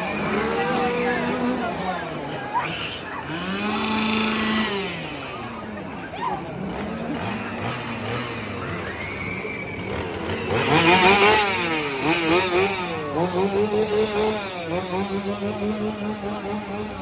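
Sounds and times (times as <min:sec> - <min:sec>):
chainsaw engine revving: 0:00.0 - 0:17.0.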